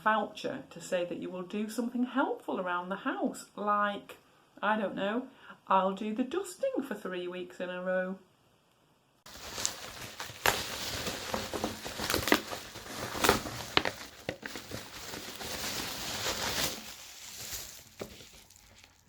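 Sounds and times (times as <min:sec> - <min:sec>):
wrapping paper tearing and crumpling: 0:09.3 - 0:19.0.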